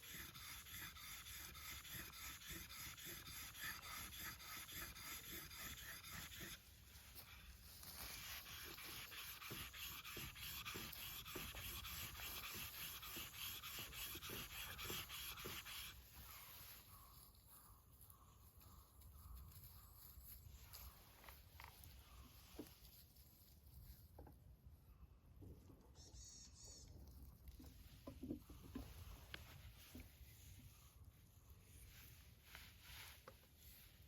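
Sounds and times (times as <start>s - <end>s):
hatchet blade scraping on whetstone: 8.6s - 16.0s.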